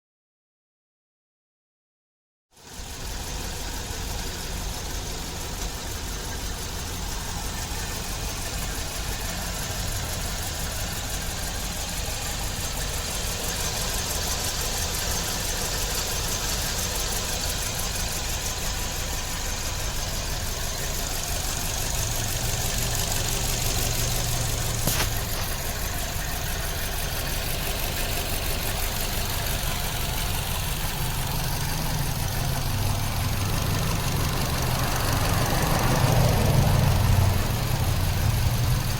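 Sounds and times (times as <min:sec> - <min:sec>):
car engine idling with misfire: 0:02.6 - 0:38.9
sharp click: 0:24.8 - 0:25.3.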